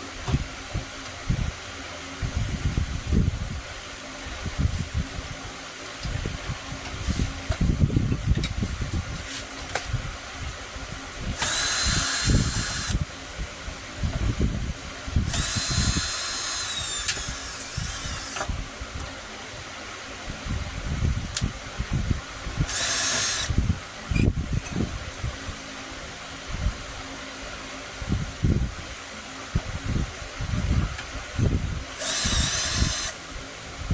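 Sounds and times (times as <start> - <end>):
electric power tool whining: 11.4 - 13.0, 15.2 - 18.6, 22.7 - 24.4, 32.0 - 33.3.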